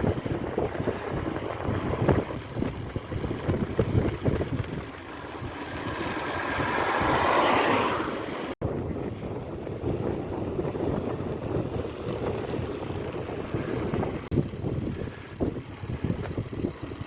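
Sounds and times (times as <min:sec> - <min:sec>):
passing vehicle: 0:00.0 - 0:08.6
wind buffeting microphone: 0:00.0 - 0:17.0.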